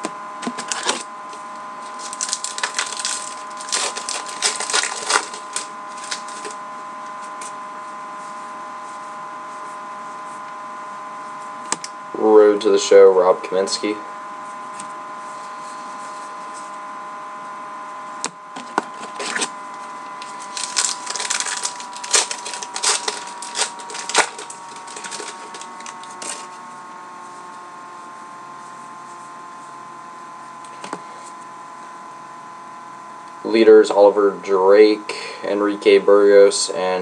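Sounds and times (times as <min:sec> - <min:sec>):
background hum with faint tone: 0:00.0 - 0:37.0
cards clicking and rustling: 0:01.8 - 0:06.6, 0:20.3 - 0:26.5.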